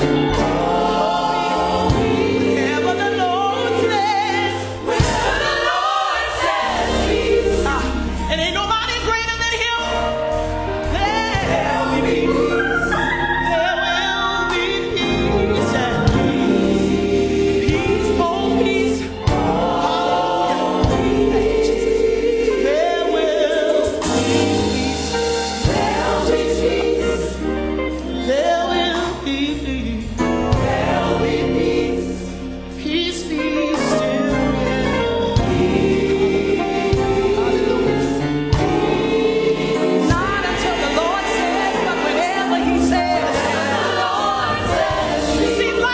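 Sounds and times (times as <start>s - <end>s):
bass: 0.0s - 45.9s
gospel choir singing: 0.0s - 45.9s.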